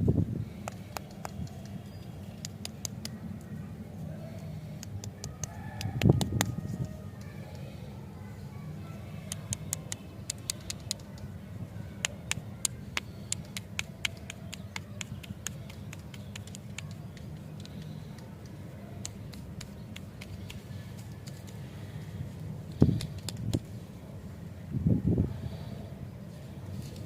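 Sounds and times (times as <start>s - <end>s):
clicks of small hard items: 9.3s - 11.3s.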